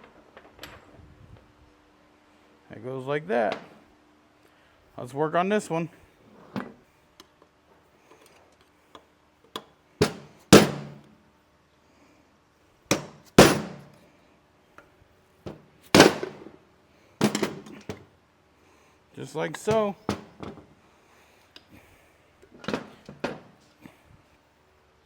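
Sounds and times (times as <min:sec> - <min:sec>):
hammer striking metal: 0:10.0 - 0:11.0, 0:12.9 - 0:13.9.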